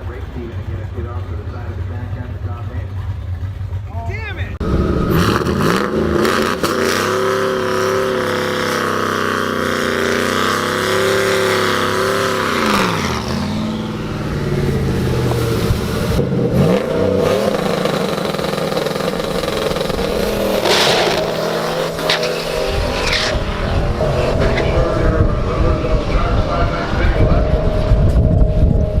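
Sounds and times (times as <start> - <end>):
car engine revving: 0.0 - 29.0.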